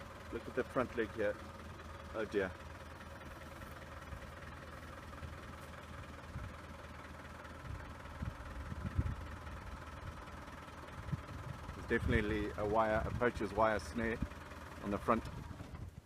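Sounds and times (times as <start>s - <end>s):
vehicle engine rumbling: 0.0s - 16.0s.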